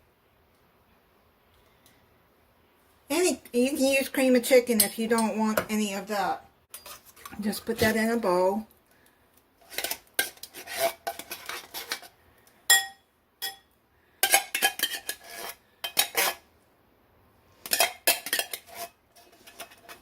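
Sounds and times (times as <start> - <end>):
spoon scraping metal can: 6.7 - 8.0, 9.6 - 12.2, 14.2 - 16.5, 17.6 - 20.0.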